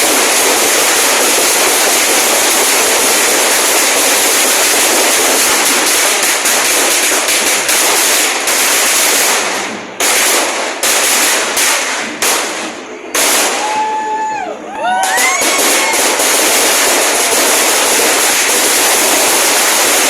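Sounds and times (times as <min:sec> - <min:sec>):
firecrackers crackling: 0:00.0 - 0:20.0.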